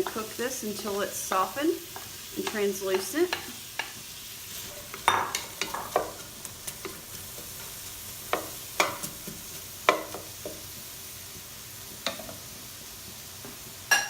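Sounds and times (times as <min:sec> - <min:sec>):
onion sizzling in oil: 0:00.0 - 0:14.0
utensil scraping a pan: 0:01.9 - 0:10.6.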